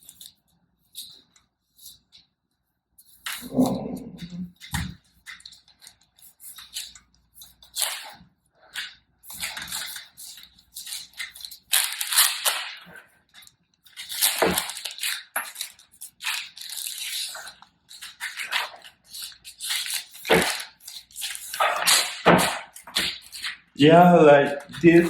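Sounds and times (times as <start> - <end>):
packaging rustling and crinkling: 8.8 - 25.0.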